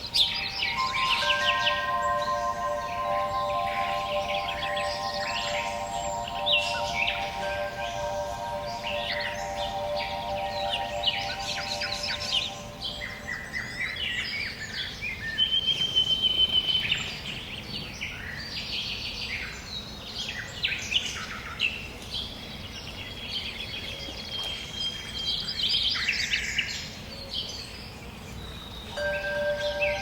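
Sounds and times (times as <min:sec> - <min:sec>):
long high bird note: 0:00.0 - 0:13.8, 0:29.0 - 0:30.0
songbirds chirping: 0:00.0 - 0:30.0.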